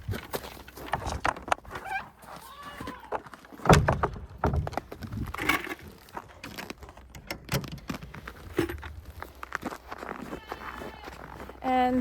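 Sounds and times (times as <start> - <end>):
irregular knocks and thumps: 3.6 - 5.8.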